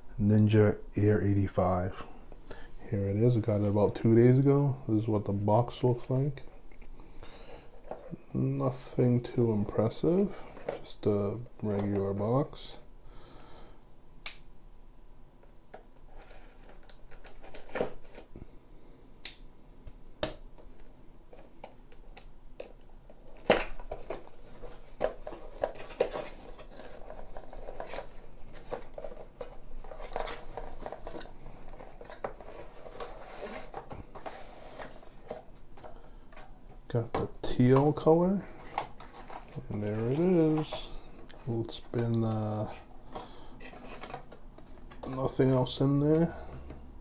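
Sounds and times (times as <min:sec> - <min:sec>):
cardboard and packaging rustling: 0:03.0 - 0:12.8, 0:16.0 - 0:18.4, 0:22.6 - 0:47.0.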